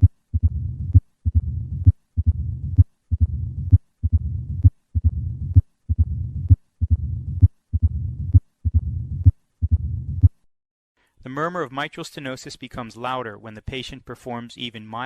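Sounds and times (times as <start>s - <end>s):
heartbeat through stethoscope: 0.0s - 10.4s
low rumbling heart murmur: 0.0s - 10.4s.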